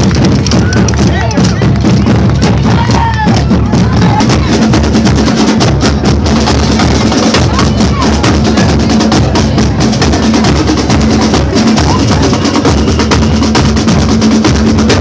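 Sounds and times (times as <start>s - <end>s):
marching band playing: 0.0s - 15.0s
rapid drum strokes: 0.0s - 15.0s.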